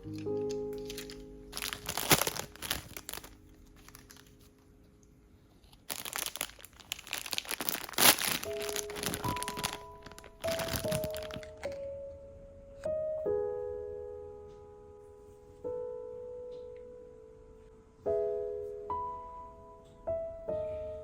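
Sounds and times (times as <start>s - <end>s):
packaging crinkling: 0.0s - 4.6s, 5.6s - 11.9s
gentle background music: 0.0s - 21.0s.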